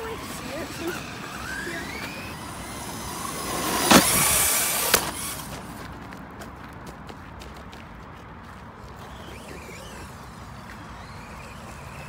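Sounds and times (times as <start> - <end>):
rc car motor whining: 0.0 - 5.8, 8.8 - 12.0
tyres rushing: 0.0 - 6.3
rc car landing bang: 1.4 - 5.4.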